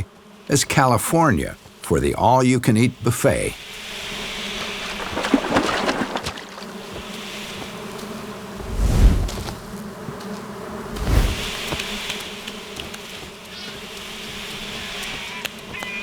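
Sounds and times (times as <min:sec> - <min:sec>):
flies buzzing: 0:00.0 - 0:16.0
low whooshing: 0:08.6 - 0:09.7, 0:10.9 - 0:11.6.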